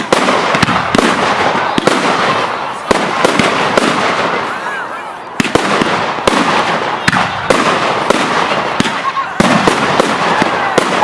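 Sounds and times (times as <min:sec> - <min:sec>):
fireworks banging: 0:00.0 - 0:11.0.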